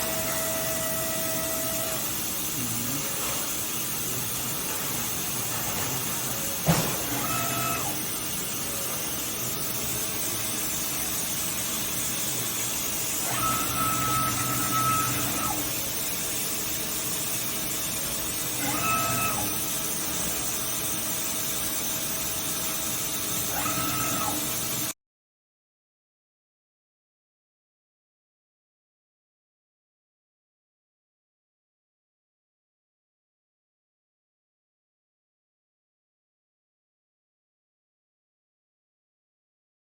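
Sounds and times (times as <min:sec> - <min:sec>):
short motor whines: 0:00.0 - 0:03.6, 0:06.1 - 0:08.1, 0:13.1 - 0:15.9, 0:18.5 - 0:20.2, 0:23.3 - 0:24.9
machining center humming: 0:00.0 - 0:16.2.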